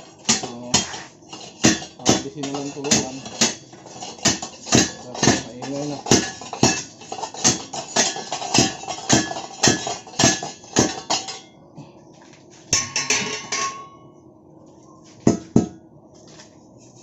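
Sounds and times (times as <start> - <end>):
hammer striking metal: 4.2 - 11.5.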